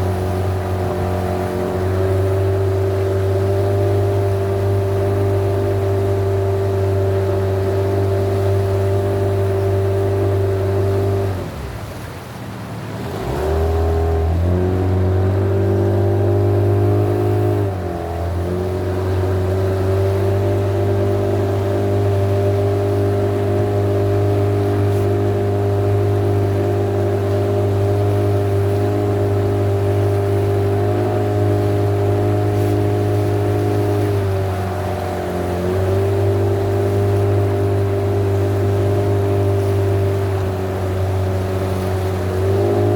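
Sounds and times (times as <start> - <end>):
boat motor running: 0.0 - 42.9.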